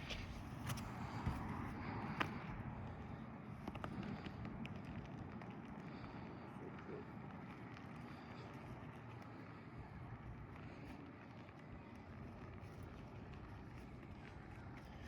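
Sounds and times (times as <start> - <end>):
faint outdoor background noise: 0.0 - 15.0.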